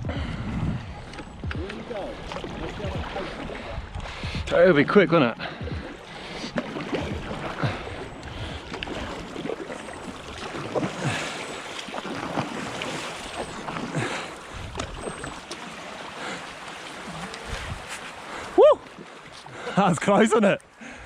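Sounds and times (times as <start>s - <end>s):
wind on microphone: 0.0s - 4.6s, 14.5s - 15.3s, 17.3s - 18.1s
water rushing: 0.0s - 20.8s
paddle splashes: 0.9s - 21.0s.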